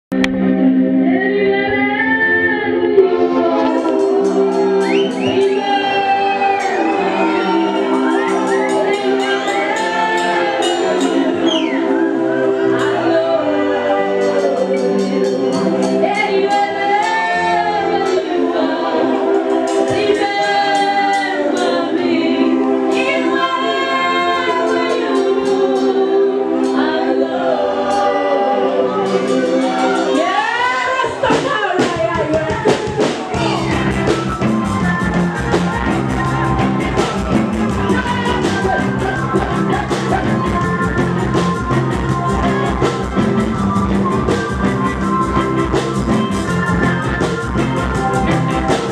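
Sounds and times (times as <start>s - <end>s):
keyboard chords: 0.1s - 32.1s, 33.0s - 48.9s
person singing: 0.1s - 48.9s
bass and drums beat: 3.6s - 11.9s, 29.1s - 48.9s.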